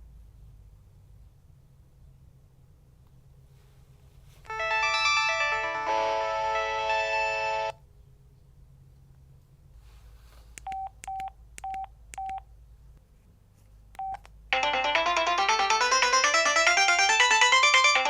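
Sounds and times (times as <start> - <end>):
polyphonic phone ringtone: 4.5 - 7.8, 14.0 - 18.0
keypad clicking beeps: 10.6 - 12.4, 14.0 - 14.3.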